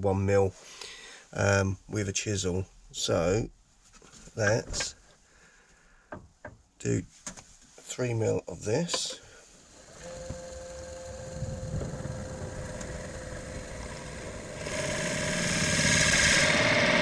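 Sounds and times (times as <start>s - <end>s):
drill bit boring into wood: 9.8s - 17.0s
lathe motor humming: 9.8s - 17.0s.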